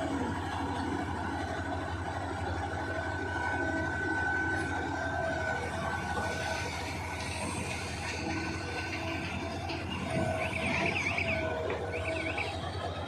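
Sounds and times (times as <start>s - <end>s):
diesel engine drone: 0.0s - 13.0s.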